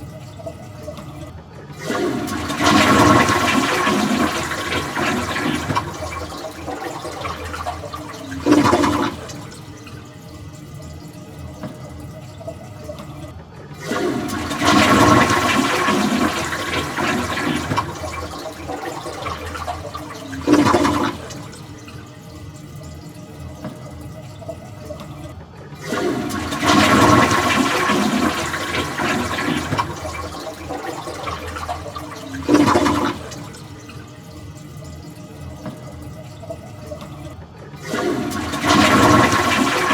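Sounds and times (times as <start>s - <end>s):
toilet flushing: 0.0s - 39.9s
water running: 1.8s - 10.0s, 13.8s - 22.1s, 25.8s - 39.9s.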